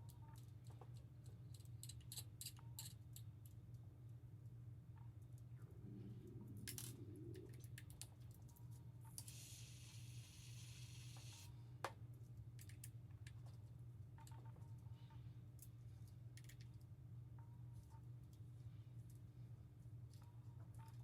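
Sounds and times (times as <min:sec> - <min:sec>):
steady low hum: 0:00.0 - 0:21.0
hiss: 0:09.2 - 0:11.5.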